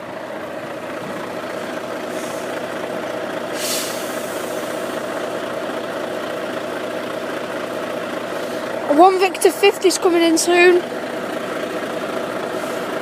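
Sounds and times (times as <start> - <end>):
engine idling: 0.0 - 13.0
short hiss of air: 3.6 - 4.7.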